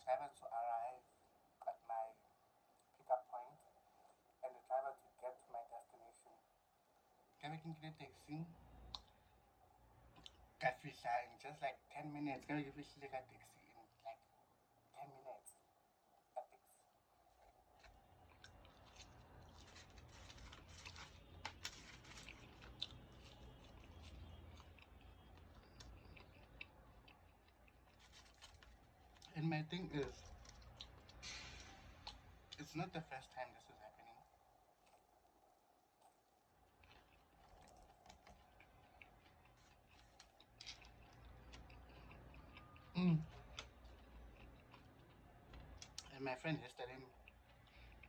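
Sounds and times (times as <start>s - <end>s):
chewing with mouth clicks: 8.8s - 9.2s, 10.1s - 10.5s, 17.2s - 46.2s, 47.1s - 48.0s.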